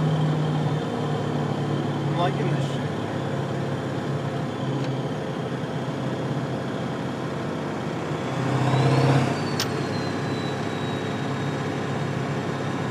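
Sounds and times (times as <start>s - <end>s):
diesel engine running: 0.0s - 12.9s
turbo whistle whine: 8.2s - 11.8s.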